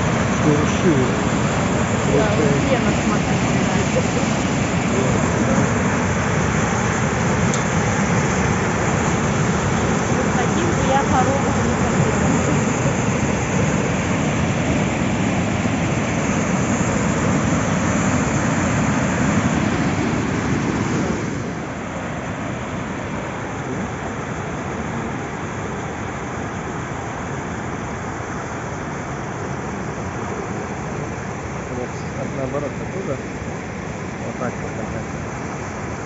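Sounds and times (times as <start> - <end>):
waterfall rushing: 0.0 - 25.7.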